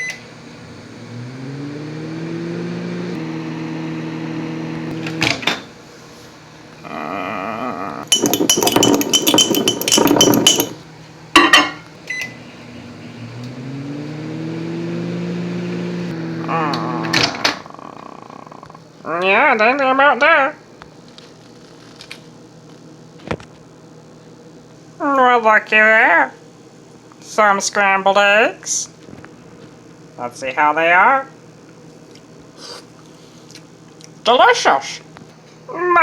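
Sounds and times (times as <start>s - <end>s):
microwave oven humming: 0.0s - 36.0s
clank: 8.1s - 10.8s
fork scraping a glass jar: 8.1s - 10.8s.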